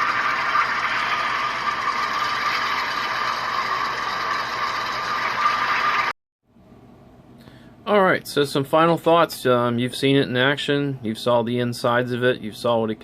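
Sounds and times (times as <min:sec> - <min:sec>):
simulated diesel engine sound: 0:00.0 - 0:06.1.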